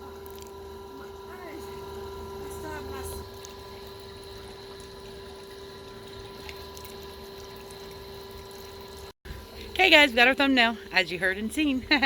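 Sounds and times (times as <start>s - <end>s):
faint pool water sounds: 0.0s - 12.0s
steady hum: 0.0s - 12.0s.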